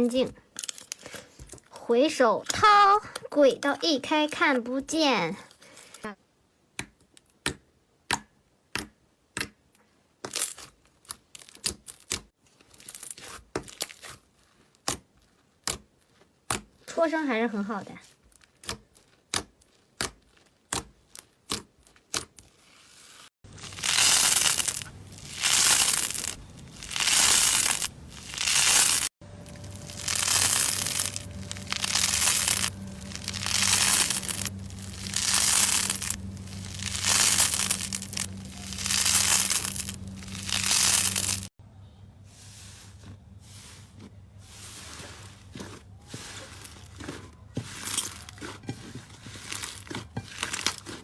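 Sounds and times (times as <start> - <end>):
slime squelching: 23.5 - 41.5.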